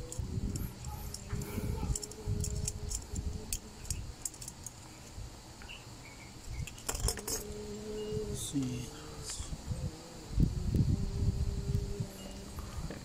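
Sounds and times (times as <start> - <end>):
small tools clicking and jingling: 0.0 - 5.0, 6.6 - 7.5
low rumbling handling noise: 0.0 - 13.0.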